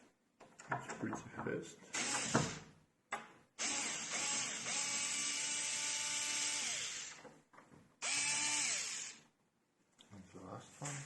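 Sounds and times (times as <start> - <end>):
electric screwdriver motor whirring: 3.6 - 7.2, 8.0 - 9.2.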